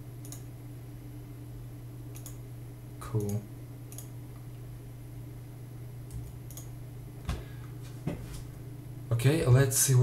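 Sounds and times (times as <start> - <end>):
low electrical hum: 0.0 - 10.0
computer clicks: 0.2 - 0.5, 2.1 - 2.4, 3.1 - 4.2, 6.1 - 6.8.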